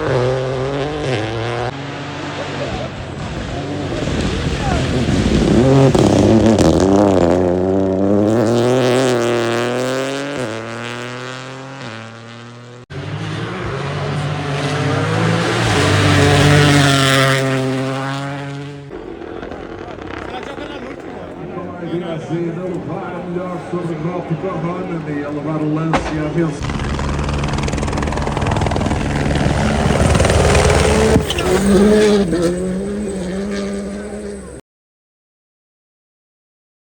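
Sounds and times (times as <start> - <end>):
rally car engine at high revs: 0.0 - 34.6
rally car passing close: 0.0 - 34.6
sharp crack: 18.9 - 21.5, 25.8 - 32.6.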